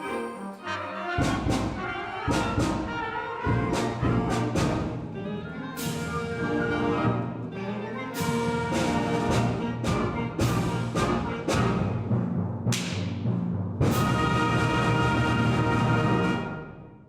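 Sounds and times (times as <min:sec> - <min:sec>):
brass chords: 0:00.0 - 0:05.2, 0:05.8 - 0:17.0
percussion strikes: 0:08.2 - 0:14.6.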